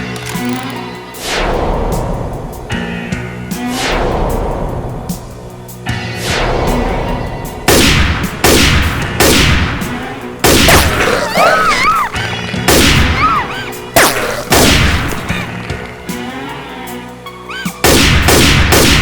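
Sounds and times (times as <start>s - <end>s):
gunshots with ringing tail: 7.7s - 16.0s, 17.8s - 19.0s.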